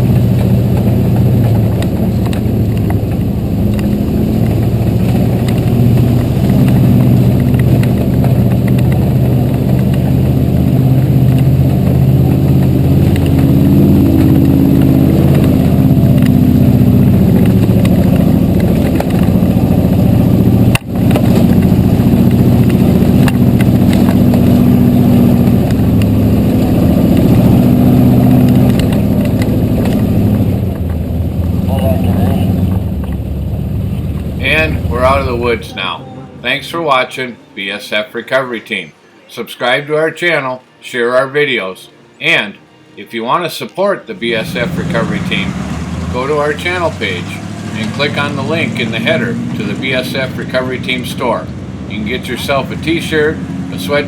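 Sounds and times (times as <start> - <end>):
truck engine running: 0.0 - 54.0.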